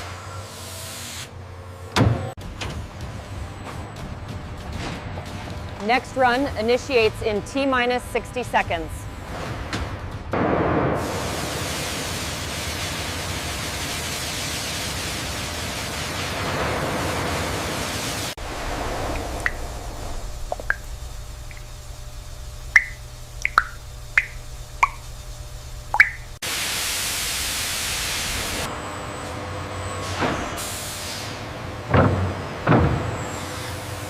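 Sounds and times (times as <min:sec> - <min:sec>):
water drips: 0:19.0 - 0:19.8, 0:20.4 - 0:21.8, 0:22.7 - 0:25.1, 0:25.9 - 0:26.4.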